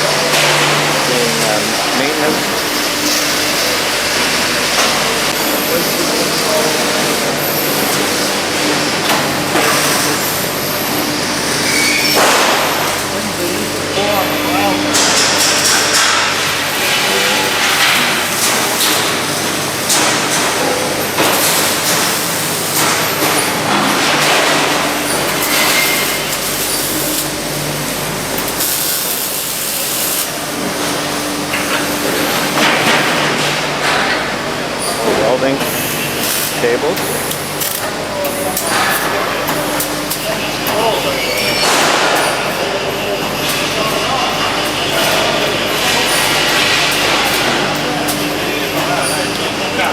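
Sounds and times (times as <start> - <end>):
factory machinery running: 0.0 - 49.9.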